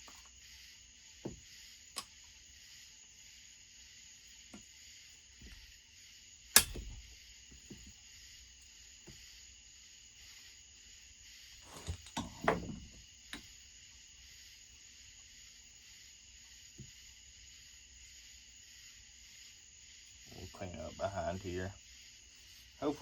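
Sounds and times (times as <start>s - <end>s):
steady high hiss: 0.0s - 23.0s
sharp metal clank: 6.6s - 7.0s.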